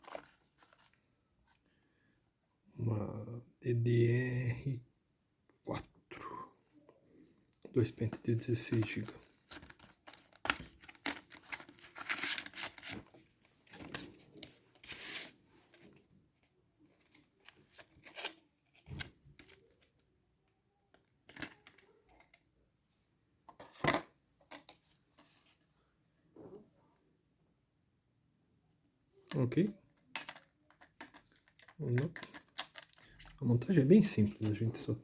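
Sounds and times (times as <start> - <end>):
plastic packaging crinkling: 8.8 - 13.1, 30.2 - 33.4.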